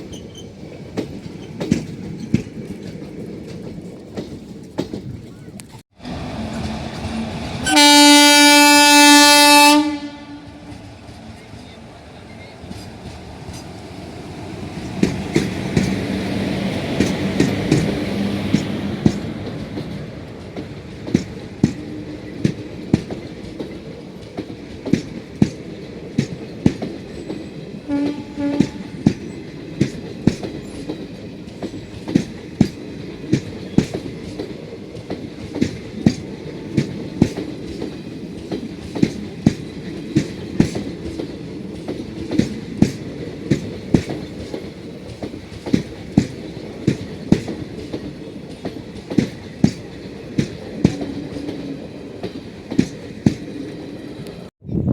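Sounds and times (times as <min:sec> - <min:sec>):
train wheels clickety-clack: 0:00.0 - 0:54.5
train horn blasts: 0:07.6 - 0:10.8, 0:27.8 - 0:29.0.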